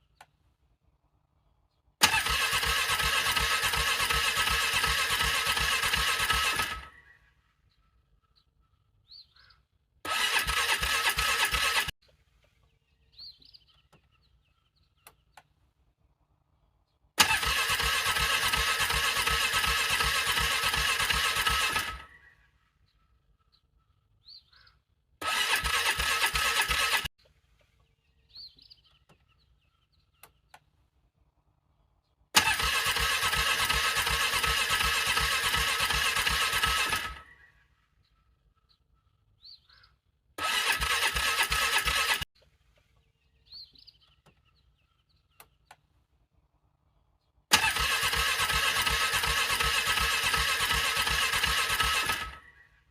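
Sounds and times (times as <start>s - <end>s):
engine starter cranking: 2.0s - 7.0s, 10.0s - 11.9s, 17.2s - 22.2s, 25.2s - 27.2s, 32.3s - 37.4s, 40.4s - 42.3s, 47.5s - 52.5s.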